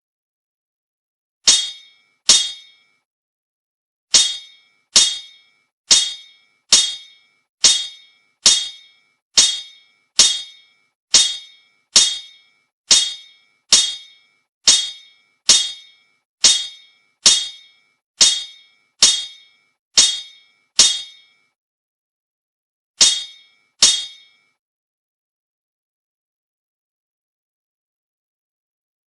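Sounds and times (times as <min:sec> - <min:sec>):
metallic clang: 0:01.5 - 0:03.0, 0:04.1 - 0:21.6, 0:23.0 - 0:24.6.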